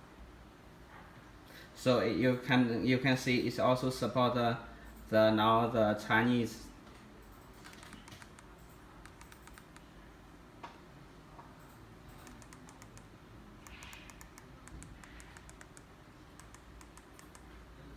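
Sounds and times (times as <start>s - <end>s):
keys clicking: 7.4s - 9.8s, 11.6s - 13.0s.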